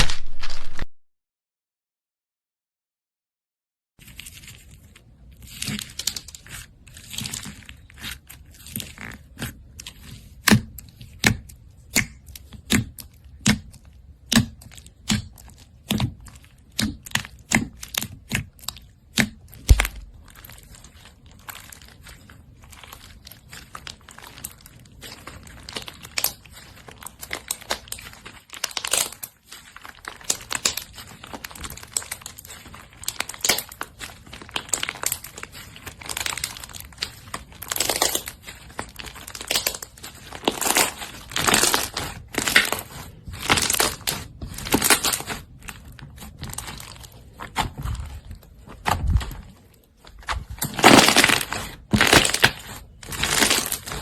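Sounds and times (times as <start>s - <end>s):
slime squishing and popping: 5.4s - 49.5s, 50.2s - 54.0s.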